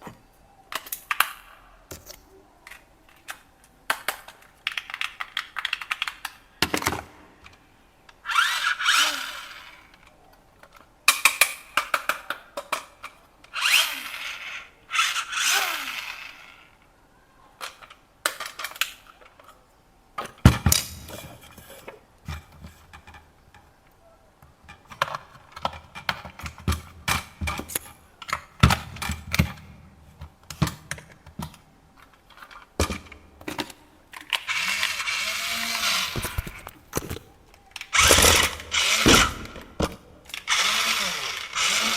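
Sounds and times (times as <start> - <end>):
plastic toy parts clicking: 0.7 - 6.8, 17.6 - 19.6, 30.6 - 41.9.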